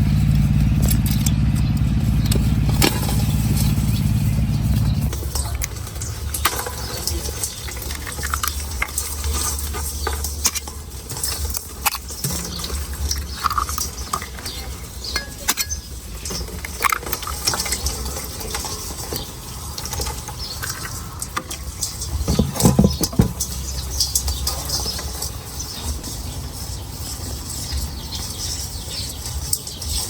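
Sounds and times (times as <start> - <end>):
utensils tapping pots and pans: 5.1 - 19.3, 20.7 - 25.4
cluster of knocks: 22.1 - 24.4.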